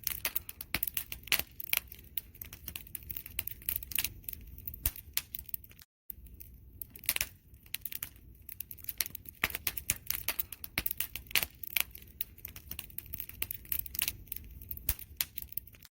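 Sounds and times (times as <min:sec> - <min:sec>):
fire pops and snaps: 0:00.0 - 0:15.9
low rumble of flame: 0:00.0 - 0:15.9
wood fire crackling: 0:00.0 - 0:15.9.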